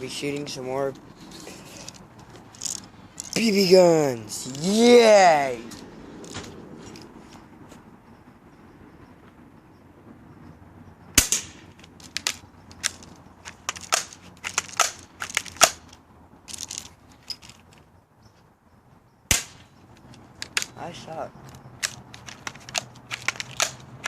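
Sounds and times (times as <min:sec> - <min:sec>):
gun handling clicks and rattles: 0:00.3 - 0:03.7, 0:05.6 - 0:07.1, 0:11.2 - 0:17.9, 0:19.3 - 0:24.0
bb gun shots: 0:11.2 - 0:11.7, 0:19.3 - 0:19.7.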